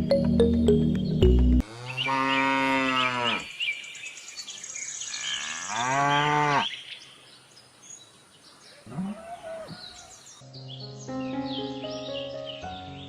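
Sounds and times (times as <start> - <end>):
background music: 0.0 - 1.6, 10.4 - 13.0
birds chirping: 0.0 - 13.0
cow mooing: 1.6 - 3.5, 5.2 - 6.7.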